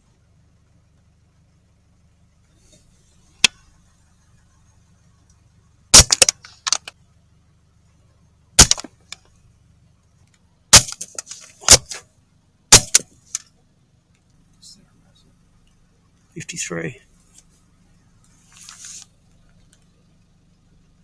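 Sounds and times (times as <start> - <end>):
faint low hum: 0.0 - 21.0
rifle shots: 5.9 - 6.8, 8.6 - 8.9, 10.7 - 12.0, 12.7 - 13.1
rifle action clicks: 6.0 - 6.9, 8.6 - 8.9.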